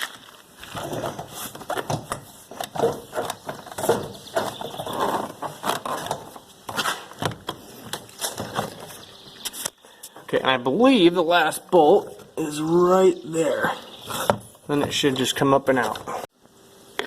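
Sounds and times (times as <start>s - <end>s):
hand tools clicking and scraping: 0.0s - 10.2s.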